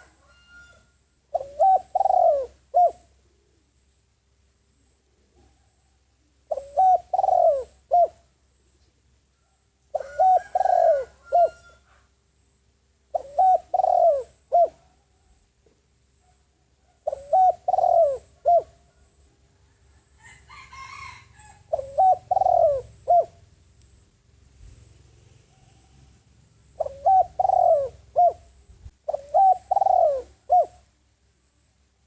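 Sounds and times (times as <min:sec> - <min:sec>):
dove cooing: 0:00.0 - 0:03.6, 0:06.4 - 0:08.3, 0:09.9 - 0:12.1, 0:13.1 - 0:15.2, 0:16.9 - 0:19.2, 0:20.4 - 0:23.5, 0:24.6 - 0:30.9.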